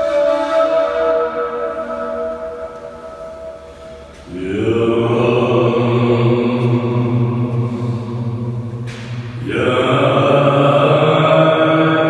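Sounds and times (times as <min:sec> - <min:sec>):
flute playing slow melody: 0:00.0 - 0:04.3.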